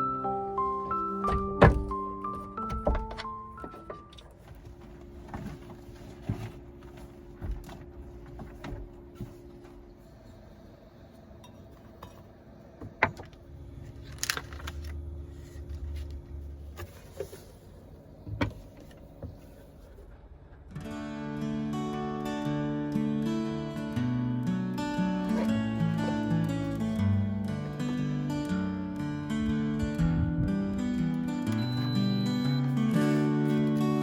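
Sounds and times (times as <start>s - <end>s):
faint steady hum: 0.0s - 34.0s
low rumble: 29.4s - 30.8s.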